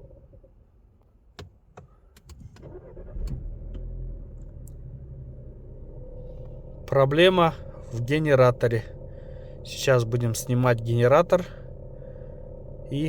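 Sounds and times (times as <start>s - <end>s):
car engine idling: 2.6s - 13.0s
alternator whine: 3.0s - 13.0s.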